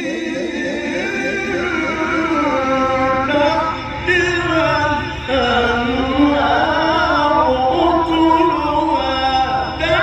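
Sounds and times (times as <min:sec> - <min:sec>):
man reciting melodically: 0:00.0 - 0:10.0.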